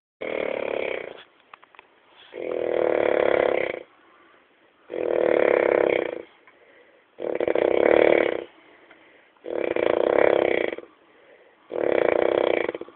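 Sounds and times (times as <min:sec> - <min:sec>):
person snoring: 0:00.2 - 0:01.2, 0:02.3 - 0:03.9, 0:04.9 - 0:06.3, 0:07.2 - 0:08.5, 0:09.4 - 0:10.9, 0:11.7 - 0:12.9.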